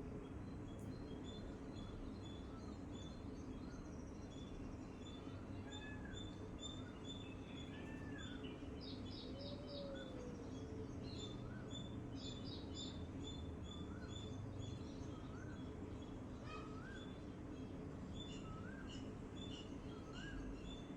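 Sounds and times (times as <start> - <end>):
songbirds chirping: 0.0 - 20.9.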